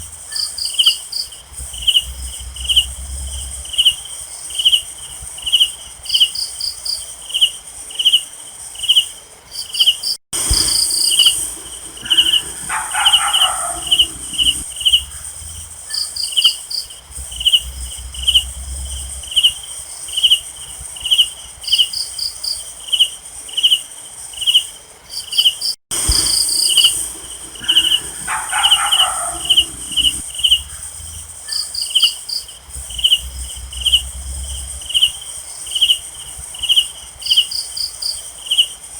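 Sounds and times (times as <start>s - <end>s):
cricket chirping: 0.0s - 38.9s
high insect hum: 0.0s - 38.9s
lower animal call: 10.4s - 15.8s, 25.9s - 31.6s.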